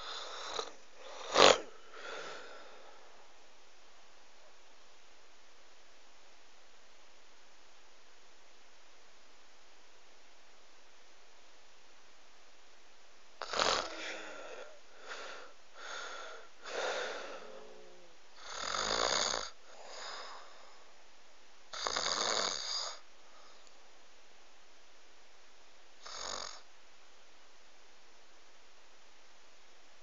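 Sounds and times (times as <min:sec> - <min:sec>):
rough snoring: 0:00.0 - 0:02.7, 0:13.4 - 0:20.5, 0:21.7 - 0:23.0, 0:26.0 - 0:26.7.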